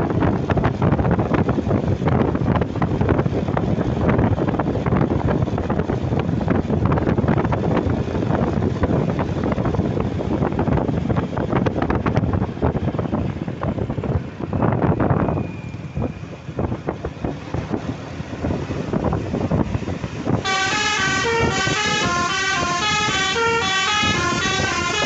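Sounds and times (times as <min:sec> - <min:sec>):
moving vehicle road noise: 0:00.0 - 0:25.0
wind buffeting microphone: 0:00.0 - 0:25.0.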